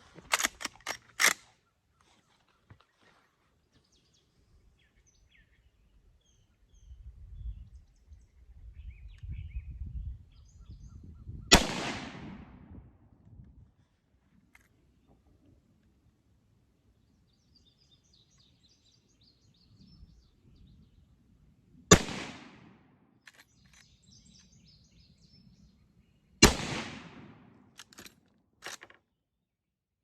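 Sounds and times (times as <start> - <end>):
metallic clacks of rifle action: 0.0 - 1.6, 23.2 - 24.5, 27.7 - 29.0
rifle shots echoing: 11.5 - 12.8, 21.9 - 22.9, 26.4 - 27.7.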